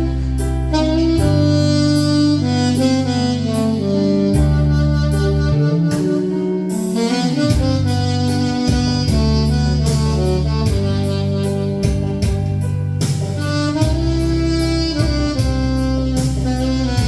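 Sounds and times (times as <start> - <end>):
backing track with bass: 0.0 - 17.0
saxophone melody: 0.0 - 17.0
light drums: 7.0 - 17.0.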